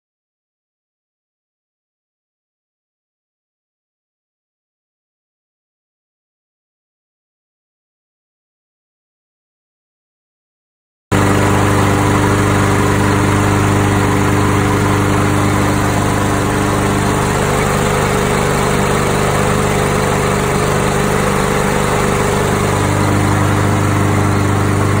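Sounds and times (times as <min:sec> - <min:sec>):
lawn mower engine running: 0:11.1 - 0:25.0.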